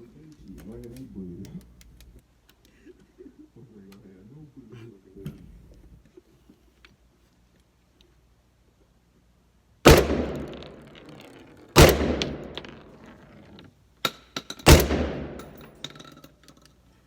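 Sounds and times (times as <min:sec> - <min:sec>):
shotgun blasts with echo: 0:09.9 - 0:13.1, 0:14.7 - 0:15.7.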